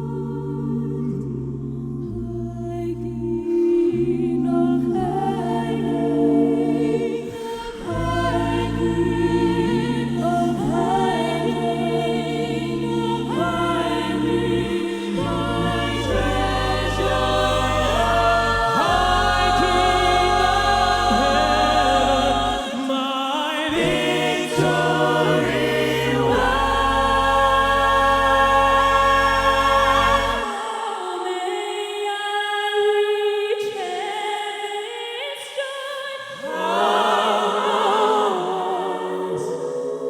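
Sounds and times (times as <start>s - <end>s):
vocal ensemble singing chords: 0.0s - 40.0s
low sustained bass notes: 7.8s - 22.6s.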